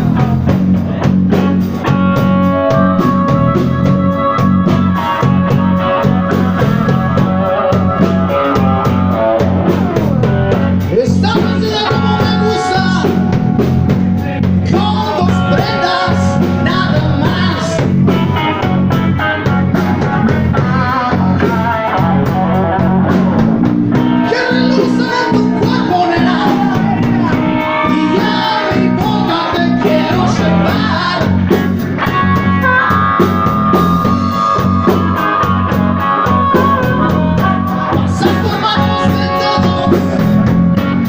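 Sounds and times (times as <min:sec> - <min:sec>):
bending guitar melody: 0:00.0 - 0:41.0
blues band playing: 0:00.0 - 0:41.0.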